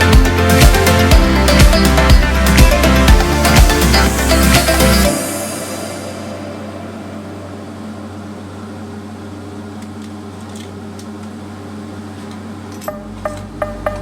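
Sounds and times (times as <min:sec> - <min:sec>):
wood-block music beat: 0:00.0 - 0:05.2, 0:12.9 - 0:14.0
electrical hum with low buzz: 0:00.0 - 0:14.0.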